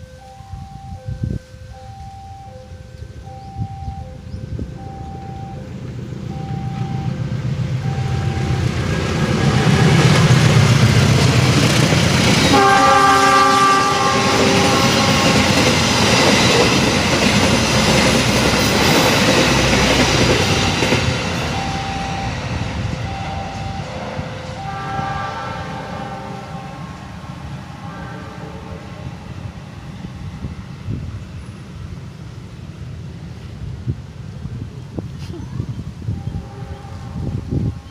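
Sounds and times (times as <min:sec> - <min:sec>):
diesel train passing: 0:00.0 - 0:37.9
train horn: 0:07.8 - 0:11.2, 0:12.4 - 0:17.8, 0:18.8 - 0:31.1, 0:36.1 - 0:37.9.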